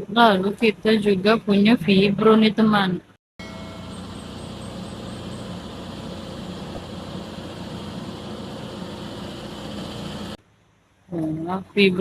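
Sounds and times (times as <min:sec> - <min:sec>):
heavy machinery engine droning: 0:03.4 - 0:10.4.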